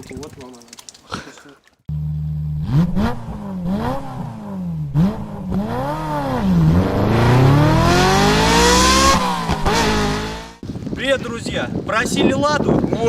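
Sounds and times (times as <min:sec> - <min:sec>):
car engine revving: 0:01.9 - 0:10.6.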